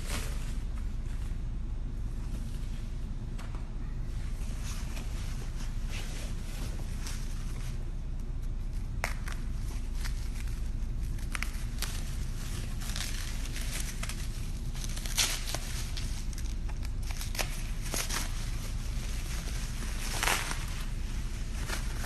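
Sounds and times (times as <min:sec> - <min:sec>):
steady low hum: 0:00.0 - 0:22.0
packing material rustling: 0:08.6 - 0:22.0.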